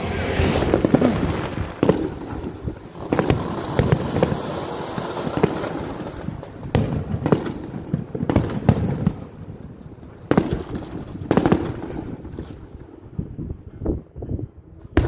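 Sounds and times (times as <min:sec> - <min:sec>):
fireworks bursting with rumble: 0:00.0 - 0:13.2.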